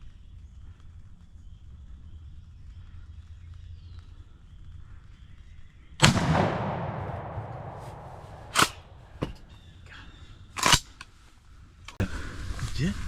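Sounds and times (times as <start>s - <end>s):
shotgun blast: 6.0s - 9.5s
sharp clacks: 6.6s - 9.5s.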